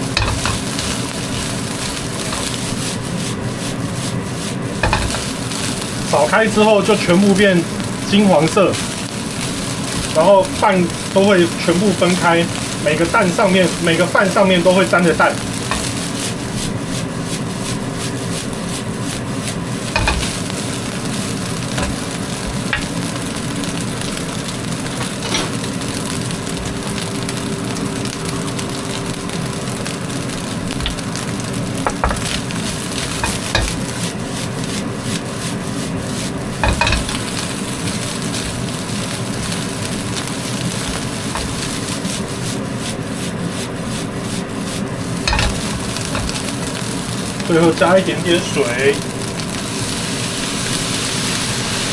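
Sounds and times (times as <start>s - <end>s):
rice sizzling in a pan: 0.0s - 51.9s
spatula knocking against pan: 4.8s - 5.2s.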